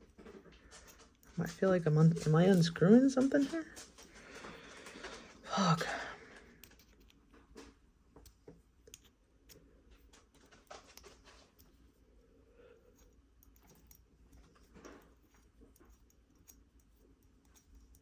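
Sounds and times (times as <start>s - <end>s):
small metal clicks and taps: 6.6s - 11.8s, 13.0s - 18.0s.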